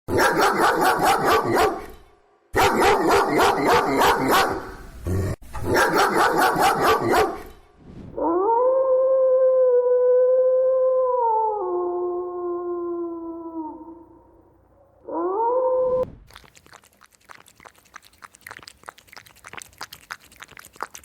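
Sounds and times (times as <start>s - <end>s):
dog yapping: 0.1s - 2.0s, 2.6s - 4.8s, 5.6s - 7.5s
dog howling: 8.2s - 14.0s, 15.0s - 16.0s.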